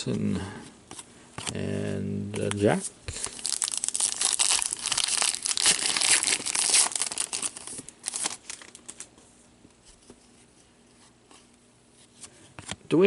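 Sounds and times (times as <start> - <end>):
wrapper tearing and crinkling: 3.1 - 9.1.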